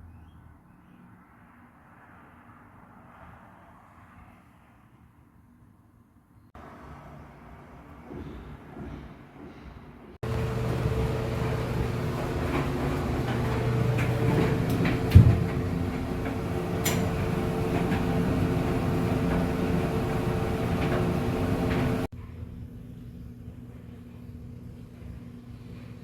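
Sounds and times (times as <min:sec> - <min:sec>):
machine hum: 0:10.2 - 0:22.1
heavy thump: 0:13.4 - 0:19.6.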